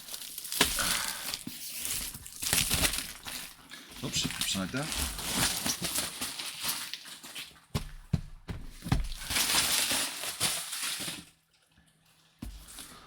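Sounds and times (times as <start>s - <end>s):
packaging rustling: 0.0s - 7.7s, 8.7s - 11.4s.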